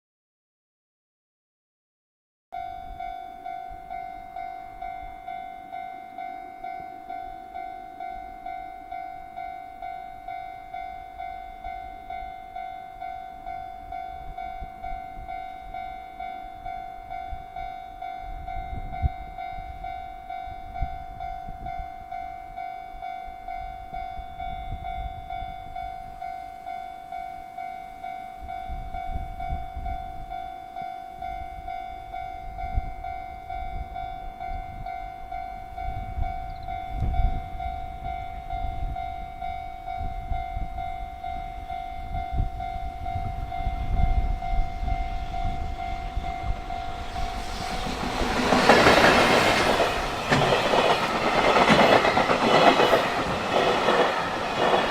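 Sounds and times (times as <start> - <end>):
low rumble: 44.0 - 52.3.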